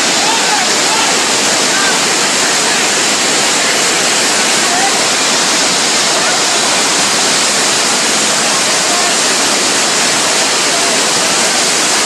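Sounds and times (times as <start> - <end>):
floodwater rushing: 0.0 - 12.0.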